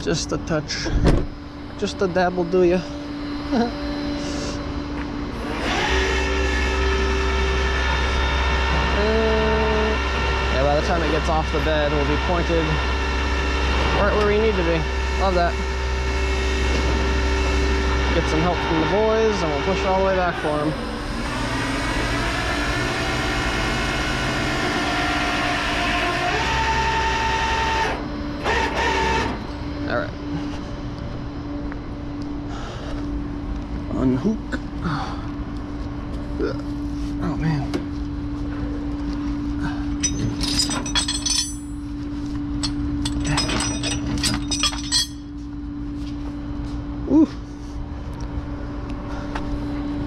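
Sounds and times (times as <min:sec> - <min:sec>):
steady mechanical whine: 0:00.0 - 0:50.0
metal chains clinking: 0:40.0 - 0:41.9, 0:42.6 - 0:45.4.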